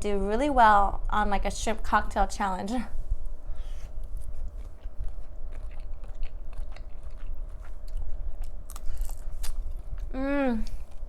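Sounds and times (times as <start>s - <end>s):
mouth chewing wet smacks: 4.0s - 10.1s.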